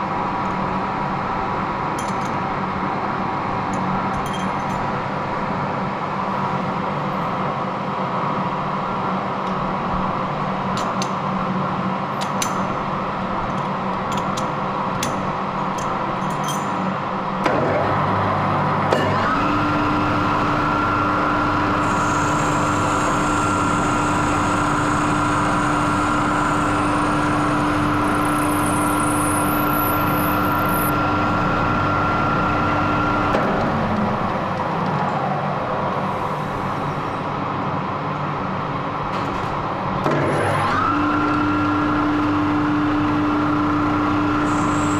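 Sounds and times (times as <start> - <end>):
steady whine: 17.0 - 37.6
lathe running: 18.3 - 33.4, 40.8 - 44.9.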